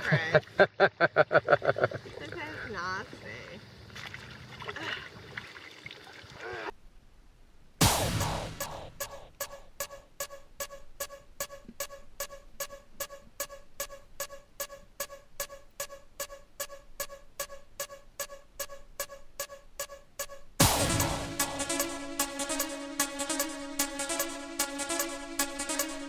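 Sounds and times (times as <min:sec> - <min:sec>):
electronic dance music: 0:07.8 - 0:09.6, 0:20.6 - 0:26.0.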